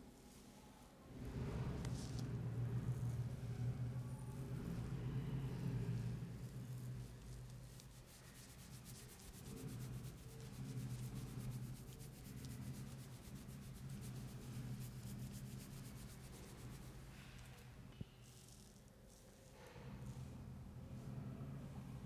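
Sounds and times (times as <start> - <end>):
low rumble: 1.2 - 8.1
hands rubbing hair and scalp: 7.2 - 17.0.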